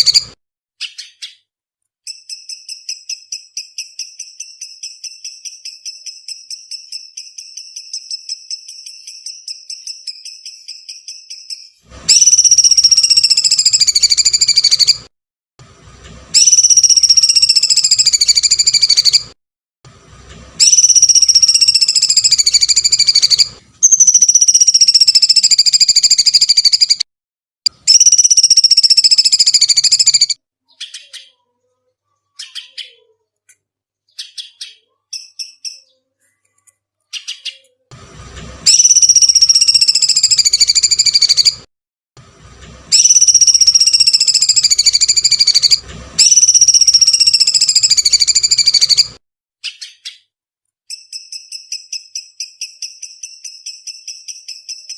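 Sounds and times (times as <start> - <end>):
faint bird chirps: 0.0 - 15.1, 16.4 - 19.3, 20.6 - 27.0, 27.8 - 37.9, 38.7 - 41.6, 42.9 - 50.3, 50.9 - 54.9
bird shrill screeching calls: 2.1 - 15.0, 16.4 - 19.3, 20.6 - 27.0, 27.9 - 31.4, 38.7 - 41.6, 42.9 - 50.2.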